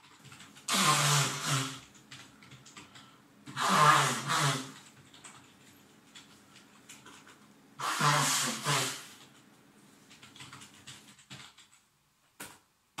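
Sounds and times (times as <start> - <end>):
keyboard typing clicks: 10.1 - 12.6.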